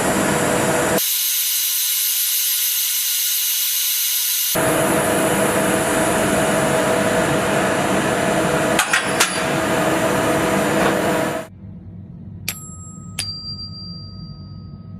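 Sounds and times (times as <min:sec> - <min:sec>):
metal-cutting machine hissing: 0:00.0 - 0:11.5
tuning fork struck and ringing: 0:12.5 - 0:14.9.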